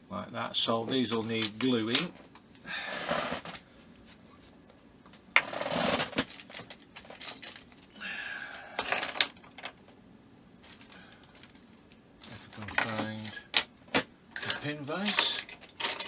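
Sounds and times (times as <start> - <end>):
small parts and tools clattering: 0.8 - 2.4, 4.6 - 7.9, 8.5 - 10.0, 10.6 - 16.0.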